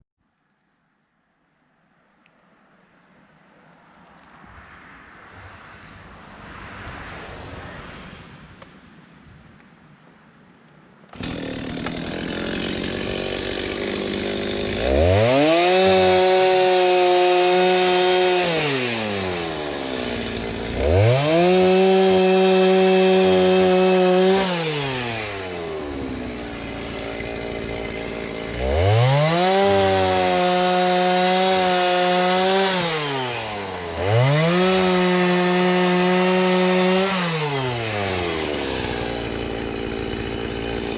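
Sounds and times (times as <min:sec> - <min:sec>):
chainsaw cutting wood: 0:11.1 - 0:40.9.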